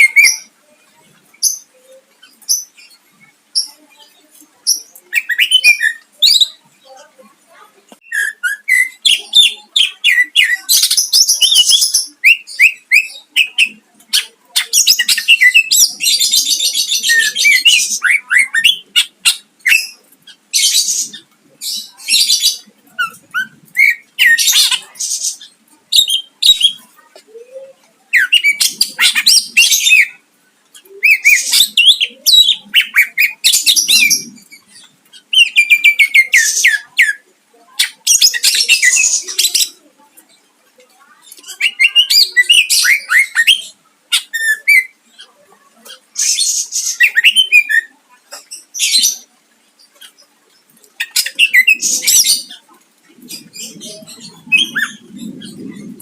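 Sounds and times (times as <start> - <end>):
bird chirping and trilling: 0.0 - 7.0, 8.0 - 56.0.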